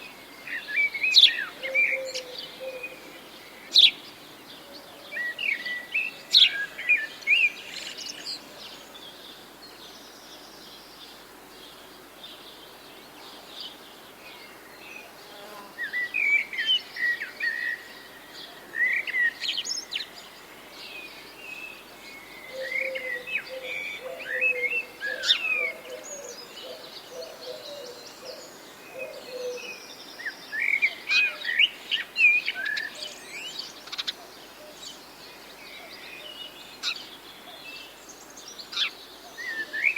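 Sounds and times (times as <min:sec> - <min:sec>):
faint background hiss: 0:00.0 - 0:39.9
birds chirping and singing: 0:21.8 - 0:35.0.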